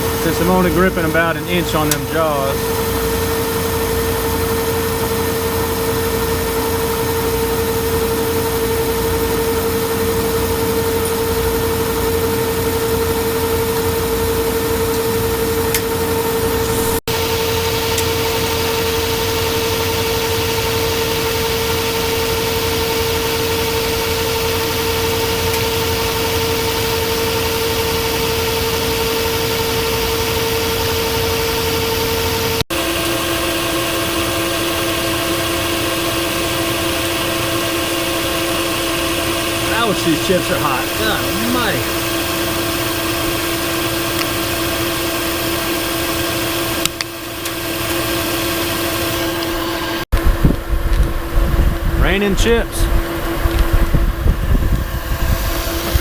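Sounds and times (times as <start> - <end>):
coolant sprayer hiss: 0.0 - 4.8, 38.6 - 43.1
lathe gear whine: 0.0 - 56.0.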